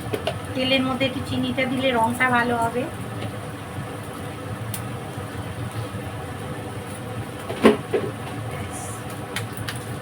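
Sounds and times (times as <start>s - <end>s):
low stove rumble: 0.0s - 10.0s.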